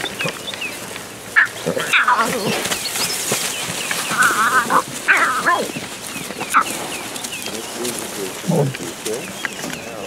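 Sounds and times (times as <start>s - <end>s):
lion cubs mewing and yelping: 1.3s - 3.2s, 3.9s - 7.4s, 8.3s - 9.9s.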